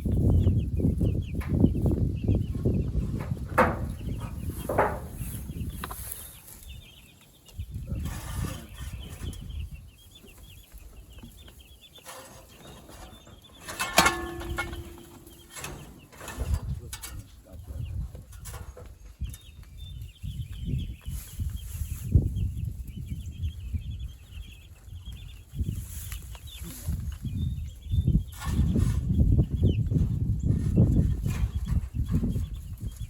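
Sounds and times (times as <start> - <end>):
chickens clucking and peeping: 0.0 - 33.0
knocks and rustling from handling: 3.2 - 6.0.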